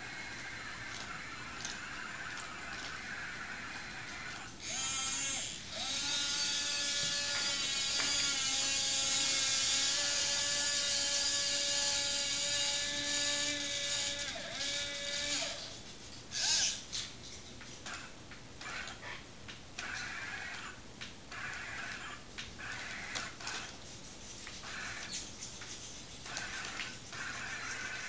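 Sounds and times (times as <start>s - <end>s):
small electric motors whining: 0.0s - 16.9s, 24.4s - 28.0s.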